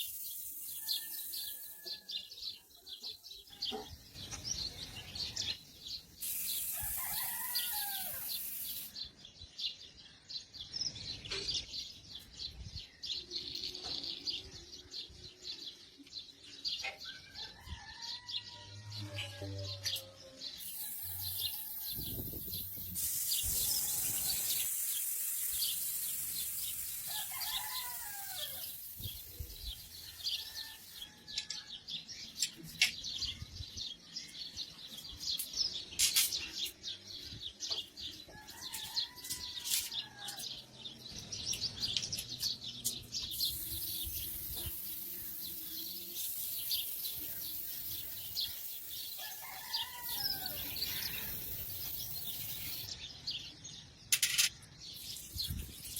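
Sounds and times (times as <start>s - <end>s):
small birds chirping: 0.0s - 55.9s
steady high hiss: 20.7s - 29.7s.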